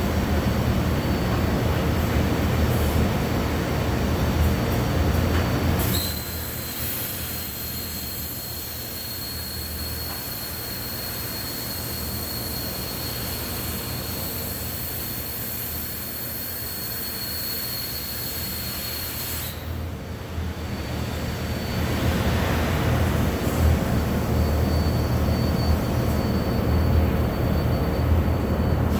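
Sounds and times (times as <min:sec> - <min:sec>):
welding arc hissing: 0:05.8 - 0:19.6.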